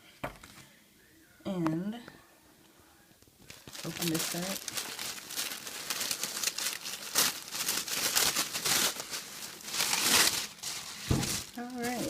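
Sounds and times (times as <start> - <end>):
packaging crinkling and rustling: 3.4 - 12.0.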